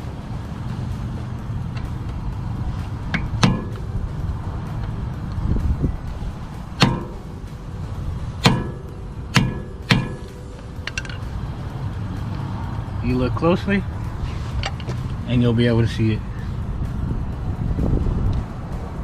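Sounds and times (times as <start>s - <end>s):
hammer striking metal punch: 3.1s - 4.0s, 6.7s - 7.4s, 8.3s - 11.2s.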